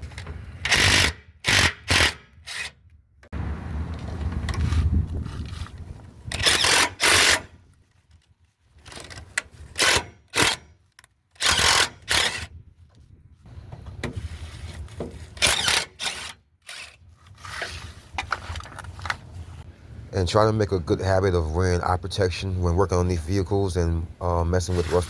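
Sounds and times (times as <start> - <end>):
power tool loosening nuts: 0.0 - 2.8, 6.3 - 7.6, 8.9 - 12.5, 15.3 - 17.0.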